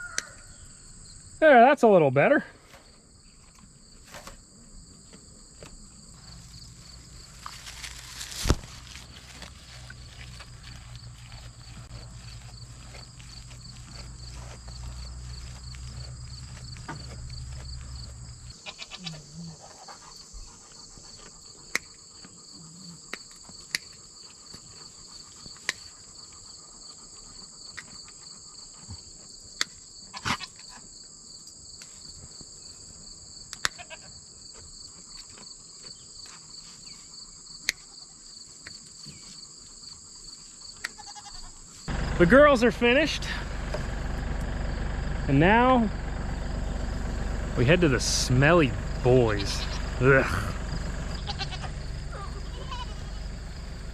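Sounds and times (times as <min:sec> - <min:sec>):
insects chorus: 0:00.0 - 0:53.9
shears snipping hooves: 0:05.1 - 0:22.4, 0:23.0 - 0:26.0, 0:40.8 - 0:53.9.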